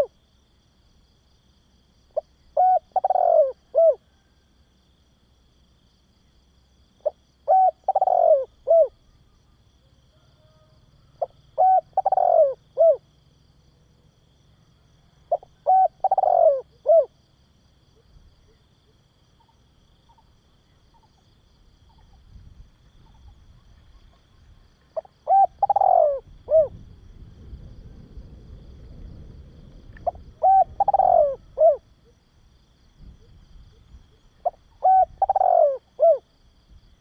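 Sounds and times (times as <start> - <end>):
dove cooing: 2.1 - 4.3, 7.0 - 9.0, 10.1 - 13.1, 15.0 - 17.2, 23.0 - 26.9, 29.9 - 32.2, 33.2 - 36.3.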